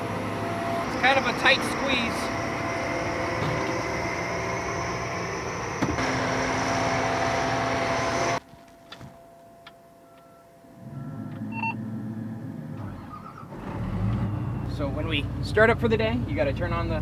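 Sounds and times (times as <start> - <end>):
machine engine running: 0.0 - 8.4
low hum: 0.0 - 13.1
short electronic beeps: 10.1 - 11.9.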